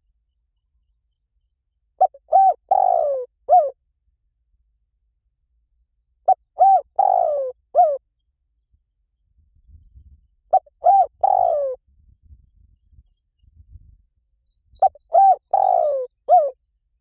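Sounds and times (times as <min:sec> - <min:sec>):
dove cooing: 0:02.0 - 0:03.8, 0:06.3 - 0:08.0, 0:10.5 - 0:11.8, 0:14.8 - 0:16.6.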